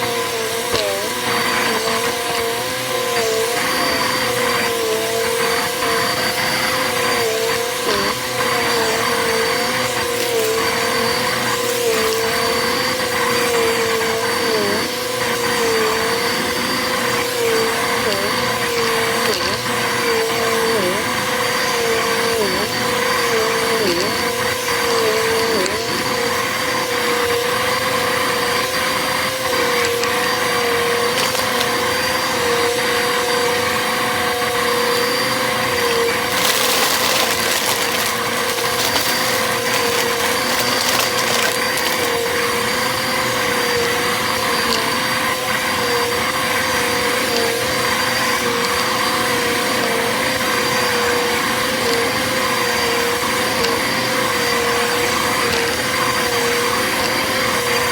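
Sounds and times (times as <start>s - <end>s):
vacuum cleaner running: 0.0s - 57.9s
foil crackling being sucked up: 36.2s - 42.2s.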